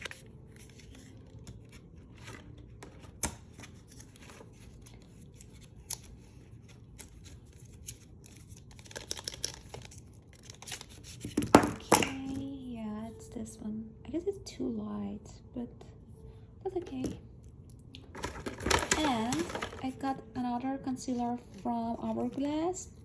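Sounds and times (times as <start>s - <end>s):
small packaging clicks: 2.4s - 11.5s
packaging rustling and scraping: 18.0s - 20.0s.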